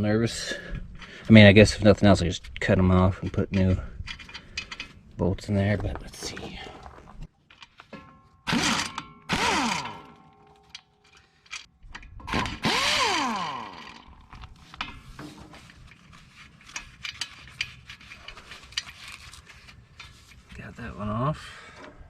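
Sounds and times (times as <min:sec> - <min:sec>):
pneumatic impact wrench whine: 0:08.5 - 0:10.2, 0:12.3 - 0:14.2.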